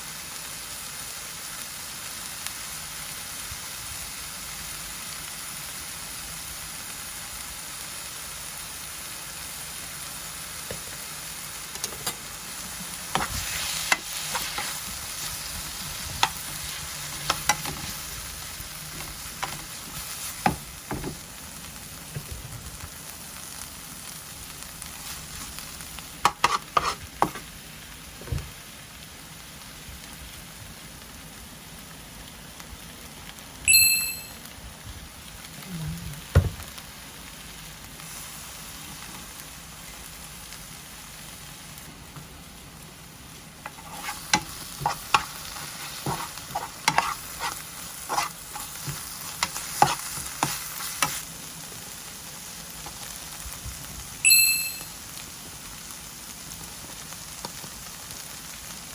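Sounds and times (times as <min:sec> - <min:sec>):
food sizzling in a frying pan: 0:00.0 - 0:58.9
utensil scraping and tapping a pan: 0:19.0 - 0:19.7, 0:26.2 - 0:27.4, 0:43.6 - 0:51.2.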